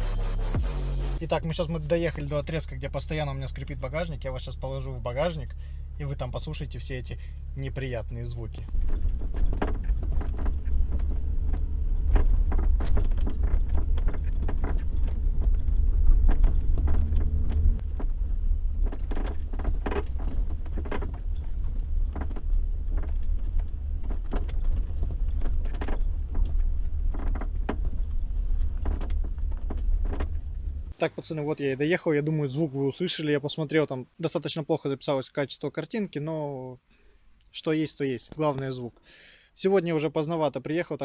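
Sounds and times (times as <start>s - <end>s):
low road rumble: 0.0s - 32.8s
tailgate creaking and squeaking: 8.6s - 31.0s.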